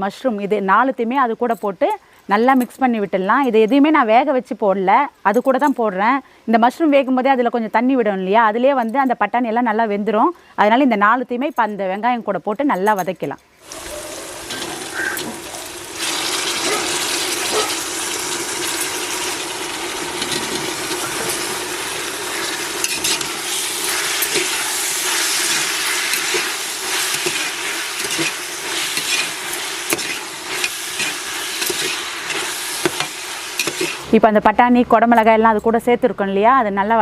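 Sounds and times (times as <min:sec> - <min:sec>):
vegetables sizzling in oil: 0:13.6 - 0:34.2
ladle scraping a pot: 0:22.3 - 0:34.1.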